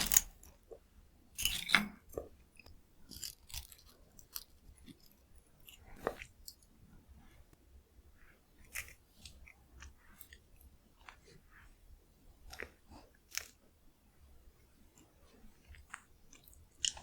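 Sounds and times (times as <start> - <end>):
chewing crispy corn snacks: 2.2 - 6.7, 12.5 - 13.6, 15.0 - 17.0.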